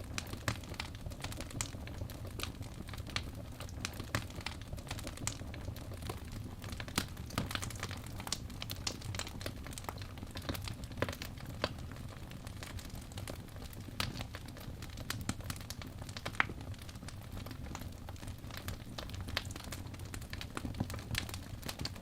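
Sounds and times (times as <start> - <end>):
low rumble of burning: 0.0 - 22.0
wood fire crackling: 0.0 - 22.0.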